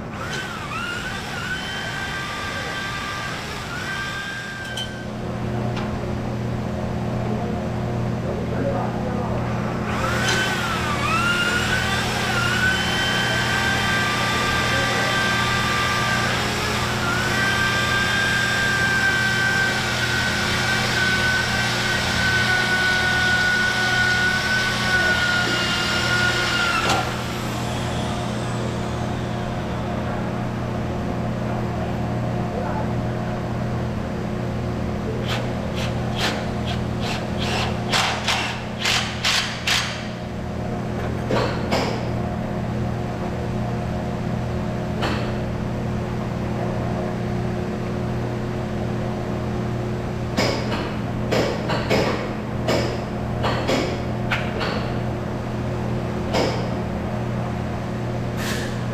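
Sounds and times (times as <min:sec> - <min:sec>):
woodworking machine motor whine: 0:00.0 - 0:05.2, 0:09.8 - 0:30.7, 0:35.1 - 0:40.2.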